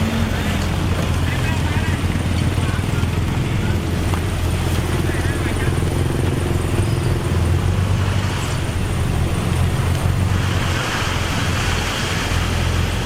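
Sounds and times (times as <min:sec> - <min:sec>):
diesel machinery engine rumble: 0:00.0 - 0:13.0
loud hiss: 0:03.9 - 0:07.5.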